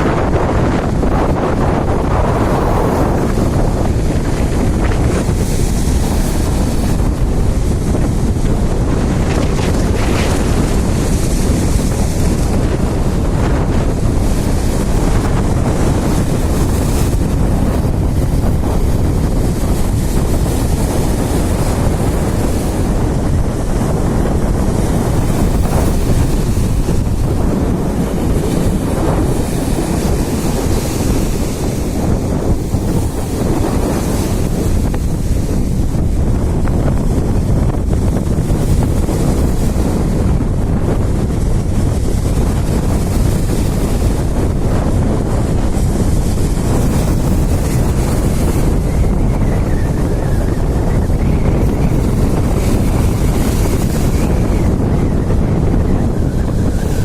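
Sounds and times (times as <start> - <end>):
sea surf: 0.0 - 57.0
wind buffeting microphone: 0.0 - 57.0.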